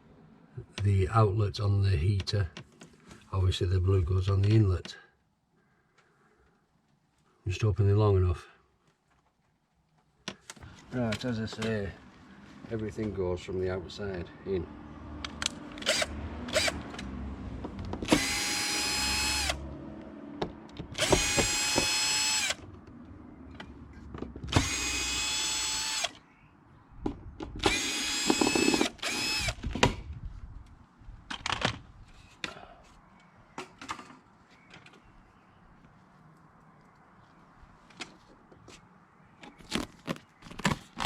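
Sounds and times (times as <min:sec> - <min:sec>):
power drill whining: 0:15.8 - 0:16.9, 0:18.0 - 0:19.6, 0:21.0 - 0:22.6, 0:24.5 - 0:26.2, 0:27.6 - 0:29.6
handling clicks and knocks: 0:16.8 - 0:18.1.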